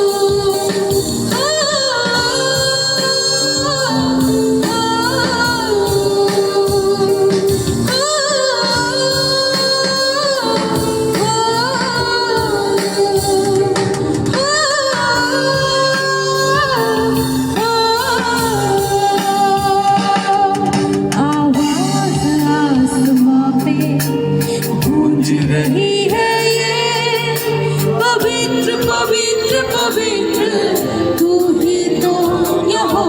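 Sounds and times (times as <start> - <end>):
instrumental accompaniment: 0.0 - 33.0
person singing: 0.0 - 33.0.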